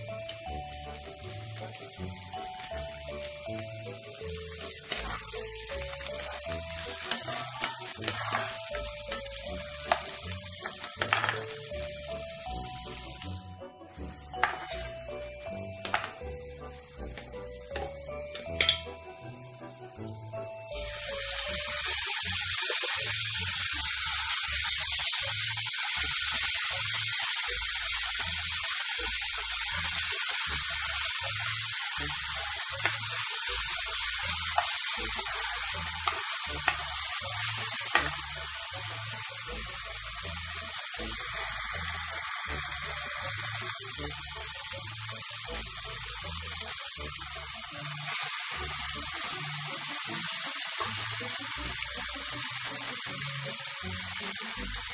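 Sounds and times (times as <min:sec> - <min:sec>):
food sizzling in hot oil: 0:00.0 - 0:54.9
spoon clicking on pan: 0:09.9 - 0:11.5, 0:14.4 - 0:14.8, 0:15.8 - 0:16.2, 0:17.2 - 0:18.9.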